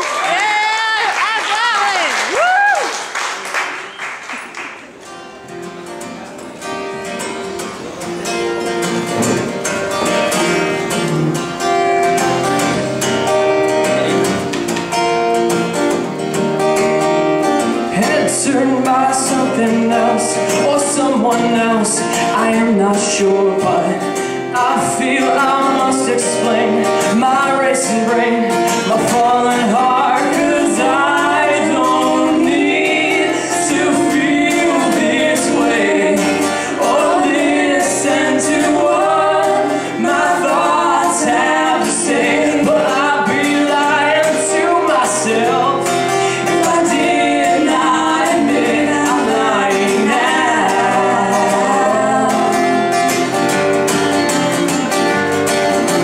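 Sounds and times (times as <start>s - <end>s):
live band playing: 3.7s - 56.0s
person singing: 17.9s - 53.2s.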